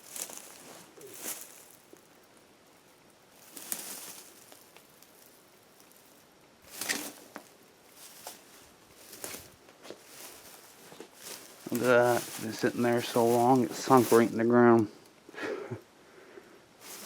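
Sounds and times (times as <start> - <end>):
faint outdoor background: 0.0 - 17.0
brief rustles: 6.7 - 7.4.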